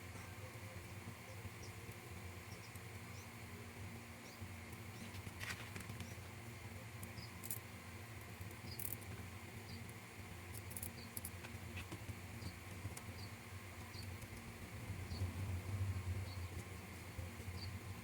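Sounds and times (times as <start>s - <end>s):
low electrical hum: 0.0s - 18.0s
small parts clicking and tapping: 7.0s - 14.5s.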